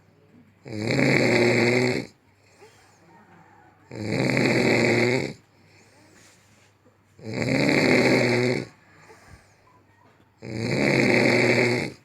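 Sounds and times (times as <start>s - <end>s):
person snoring loudly: 0.6s - 2.2s, 3.9s - 5.4s, 7.2s - 8.8s, 10.4s - 12.0s.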